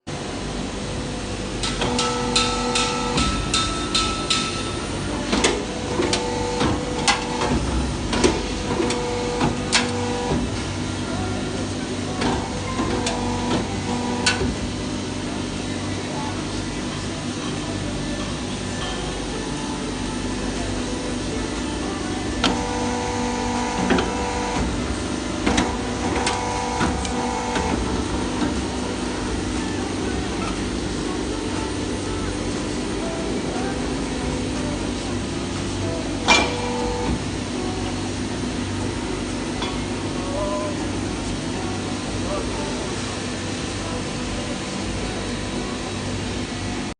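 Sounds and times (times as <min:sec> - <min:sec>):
steady machine hum: 0:00.0 - 0:46.9
humming tone: 0:21.3 - 0:46.0
motor whine: 0:22.1 - 0:35.5.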